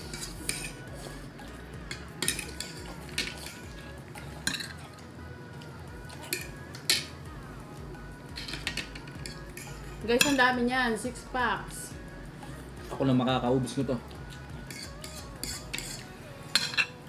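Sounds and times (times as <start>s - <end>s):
faint background music: 0.0s - 17.0s
cutlery clinking on plates: 1.9s - 3.6s, 4.4s - 4.8s, 6.2s - 7.1s, 14.6s - 17.0s.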